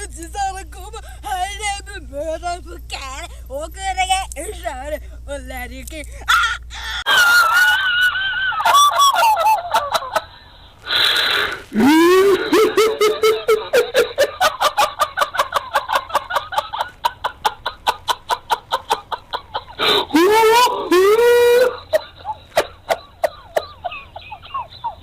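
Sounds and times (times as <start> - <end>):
wavering voice sounds: 11.6 - 13.7, 19.8 - 21.9
person laughing in quick bursts: 11.7 - 25.0.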